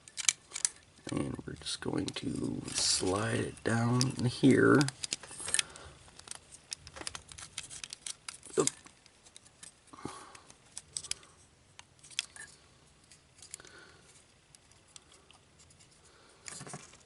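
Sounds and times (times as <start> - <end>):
plastic parts clicking: 0.0 - 13.7.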